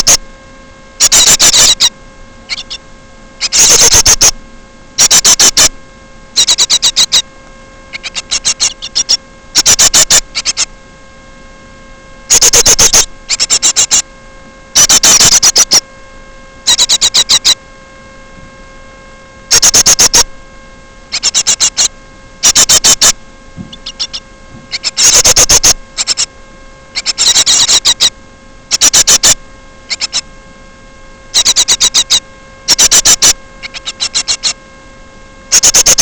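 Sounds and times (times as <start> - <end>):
electrical hum: 0.0 - 36.0
bird chirping: 1.0 - 1.9, 2.5 - 2.8, 3.4 - 4.3, 5.0 - 5.7, 6.4 - 7.2, 7.9 - 10.7, 12.3 - 14.0, 14.8 - 15.8, 16.7 - 17.6, 19.5 - 20.2, 21.1 - 26.3, 27.0 - 28.1, 28.7 - 30.2, 31.3 - 34.6.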